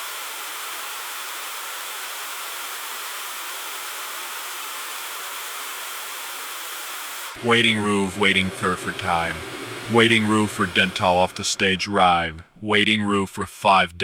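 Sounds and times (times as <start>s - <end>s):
steady hiss: 0.0s - 14.0s.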